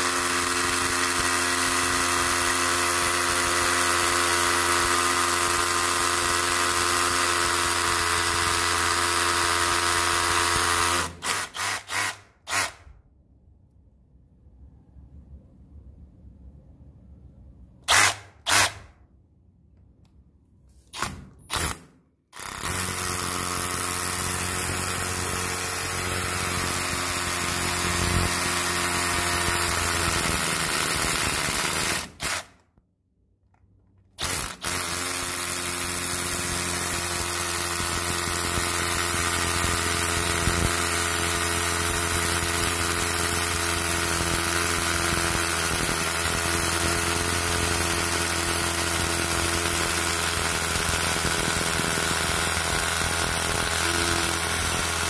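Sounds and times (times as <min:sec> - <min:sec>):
rotary hammer running: 0:34.2 - 0:55.0.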